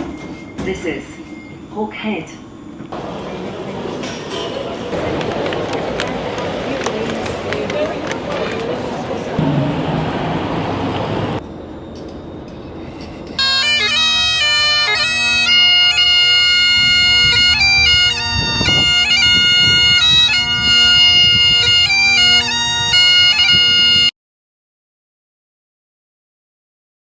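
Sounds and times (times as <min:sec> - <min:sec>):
street noise: 0:00.0 - 0:24.1
bagpipes playing over a drone: 0:13.4 - 0:24.1.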